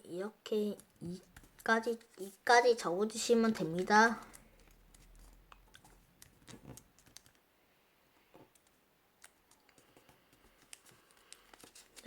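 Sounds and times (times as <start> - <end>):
paper being folded: 10.0 - 12.0.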